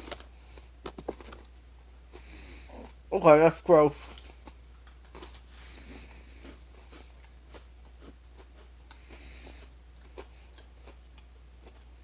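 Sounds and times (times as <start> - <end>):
low steady hum: 0.0 - 12.0
person chewing cracker: 4.1 - 12.0.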